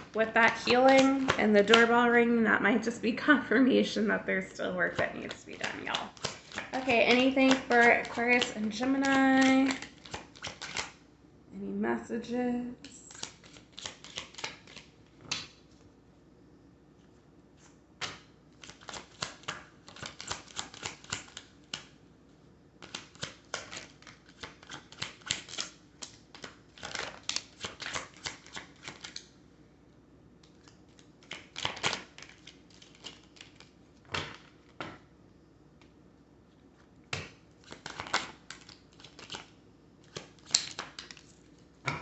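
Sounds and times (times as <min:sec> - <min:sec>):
cards being shuffled: 0:00.0 - 0:01.9, 0:05.0 - 0:11.0, 0:12.8 - 0:15.6, 0:17.6 - 0:21.9, 0:22.8 - 0:29.2, 0:30.4 - 0:35.0, 0:37.2 - 0:39.5, 0:40.1 - 0:41.4.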